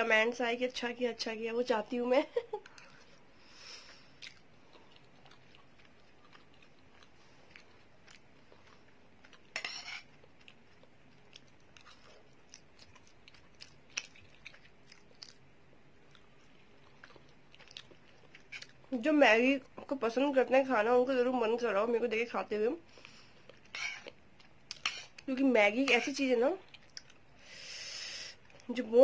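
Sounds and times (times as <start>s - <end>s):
faint chewing: 2.6s - 19.0s, 22.9s - 27.3s, 28.3s - 28.7s.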